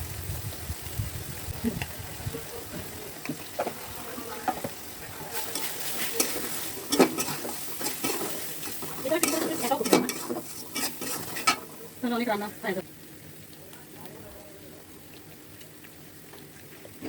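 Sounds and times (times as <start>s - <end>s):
food sizzling in hot oil: 0.0s - 17.0s
spatula scraping and knocking pan: 2.8s - 11.8s.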